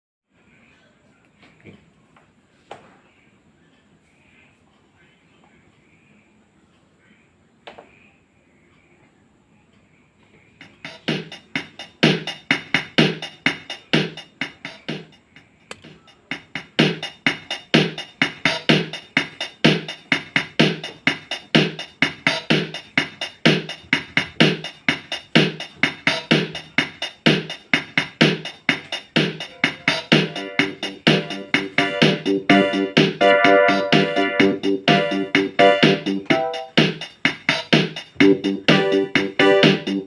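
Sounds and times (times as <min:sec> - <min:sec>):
drum machine rhythm: 0:10.6 - 0:40.0
keyboard chord notes: 0:29.6 - 0:36.8, 0:38.2 - 0:40.0.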